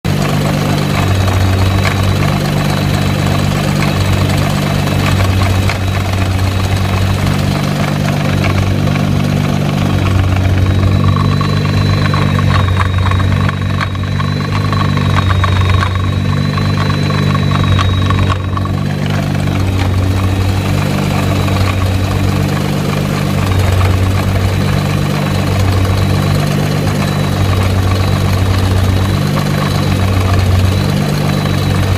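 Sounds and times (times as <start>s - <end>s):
car engine idling: 0.0s - 31.9s
drive shaft clicking rattle: 0.1s - 31.9s
thin high whine: 0.1s - 31.9s.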